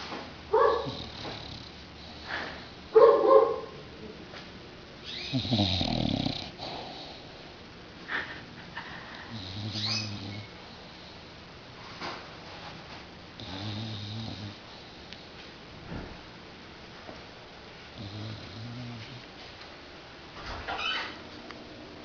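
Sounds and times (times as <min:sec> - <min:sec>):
dog snoring: 0:00.6 - 0:02.8, 0:05.1 - 0:07.4, 0:09.3 - 0:10.6, 0:13.4 - 0:15.0, 0:18.0 - 0:19.3.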